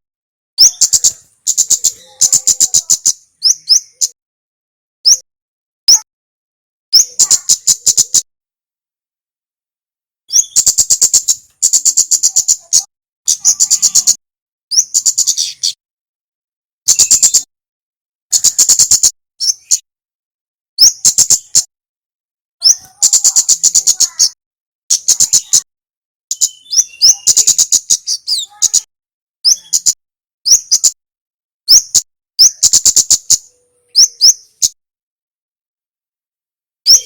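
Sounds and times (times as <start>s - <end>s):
songbird ticking calls: 0.6s - 4.2s, 10.3s - 15.8s, 16.9s - 17.5s, 18.3s - 19.8s, 20.8s - 21.7s, 22.6s - 25.7s, 26.3s - 31.0s, 31.7s - 34.8s.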